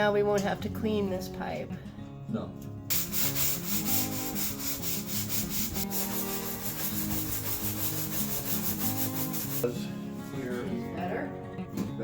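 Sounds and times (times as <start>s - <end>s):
fast scratchy shaker beat: 2.9s - 9.6s.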